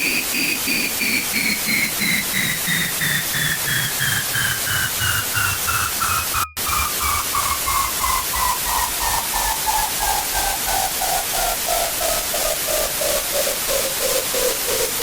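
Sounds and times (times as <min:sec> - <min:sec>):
pulsing synthesized beeps: 0:01.7 - 0:09.6
thin whistle gliding down: 0:01.8 - 0:09.8
loud static hiss: 0:04.3 - 0:15.0.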